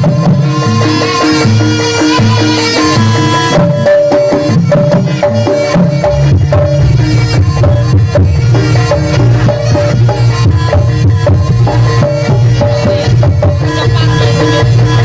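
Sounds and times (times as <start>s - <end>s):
deep steady bass: 6.0s - 15.0s.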